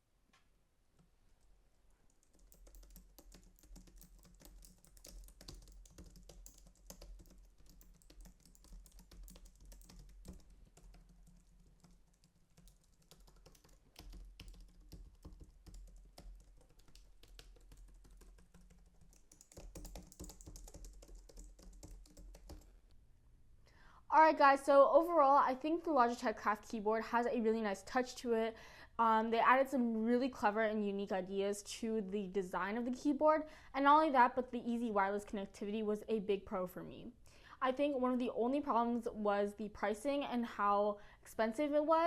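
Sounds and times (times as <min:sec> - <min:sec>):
faint keyboard typing: 0:01.0 - 0:22.9.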